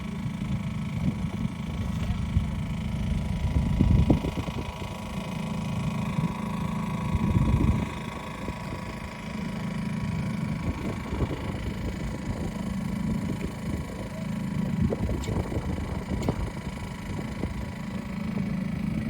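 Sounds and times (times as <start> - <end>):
motor humming: 0.0 - 19.0
wind gusting on microphone: 0.6 - 5.2, 7.1 - 9.1, 10.4 - 13.9, 14.7 - 17.9.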